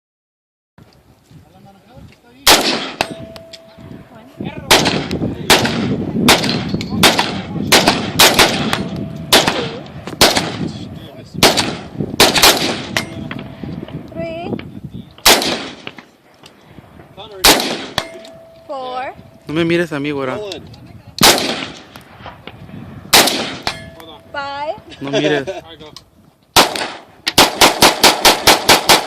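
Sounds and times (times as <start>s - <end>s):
rifle shots echoing: 2.4s - 3.6s, 4.6s - 10.8s, 11.4s - 13.6s, 15.2s - 16.2s, 17.4s - 18.5s, 21.2s - 21.9s, 23.1s - 24.0s, 26.6s - 29.0s.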